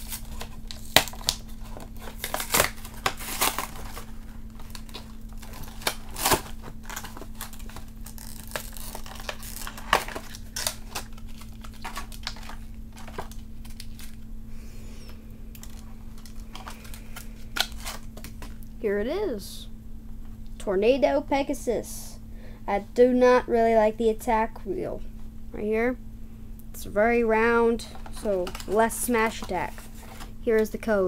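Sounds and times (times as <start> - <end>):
plastic packaging crinkling: 0.0 - 14.3, 15.0 - 18.7, 27.8 - 30.3.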